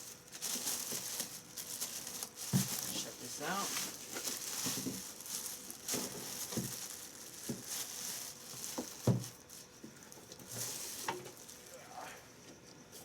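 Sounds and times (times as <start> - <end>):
packaging rustling: 0.0 - 11.7.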